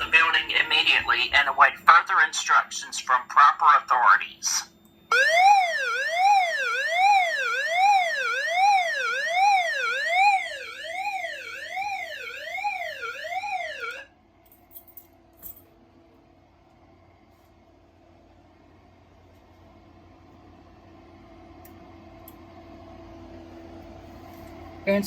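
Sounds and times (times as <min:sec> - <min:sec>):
sweeping siren tone: 0:05.1 - 0:14.1.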